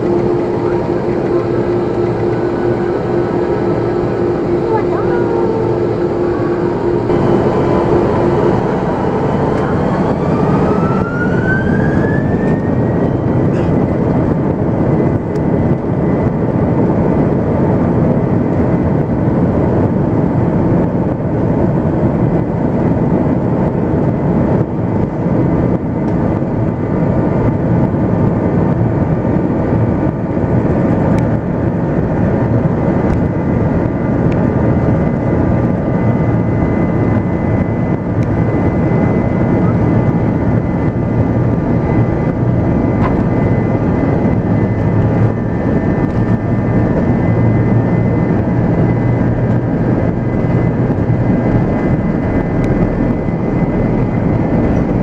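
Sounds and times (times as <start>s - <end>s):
jet engines spooling up: 0.0s - 17.4s, 28.7s - 55.0s.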